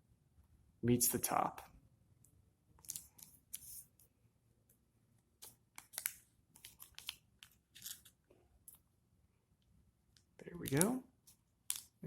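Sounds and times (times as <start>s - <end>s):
paper rustling and crinkling: 5.4s - 8.2s.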